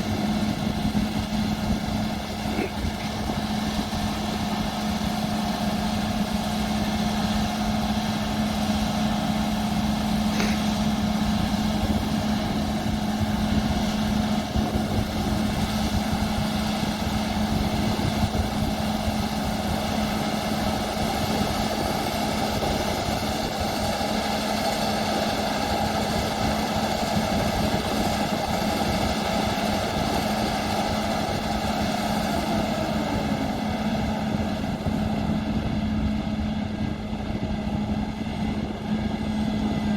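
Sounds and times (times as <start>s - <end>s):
threshing machinery rushing: 0.0s - 5.2s
combine harvester engine drone: 0.0s - 39.9s.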